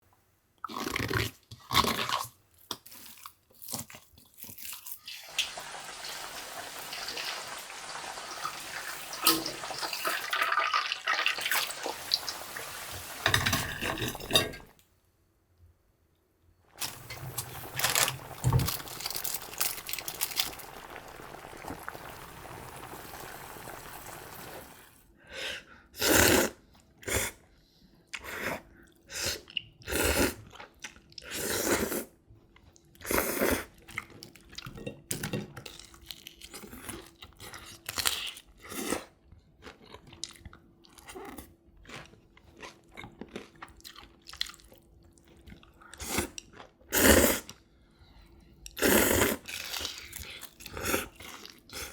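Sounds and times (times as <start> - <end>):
crunching and chewing food: 0.6 - 5.1, 16.8 - 23.8, 28.8 - 51.9.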